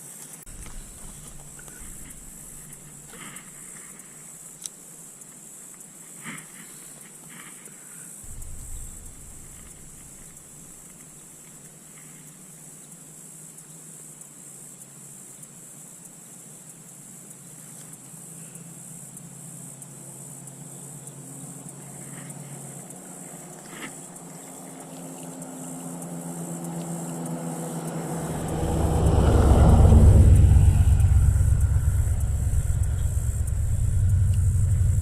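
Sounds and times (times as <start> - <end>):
vehicle passing by: 0.5 - 3.8, 8.3 - 11.0, 22.4 - 35.0.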